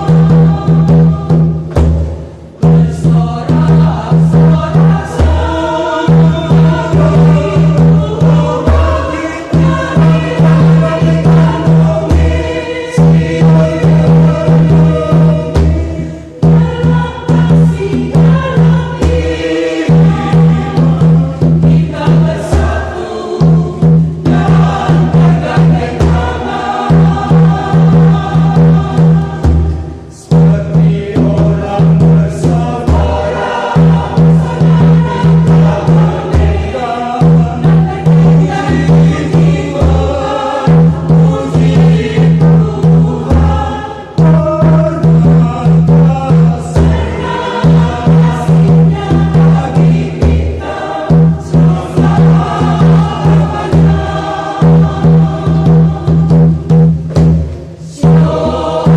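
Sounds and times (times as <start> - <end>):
choir singing a hymn: 0.0 - 58.9
low drum strokes: 0.0 - 58.9.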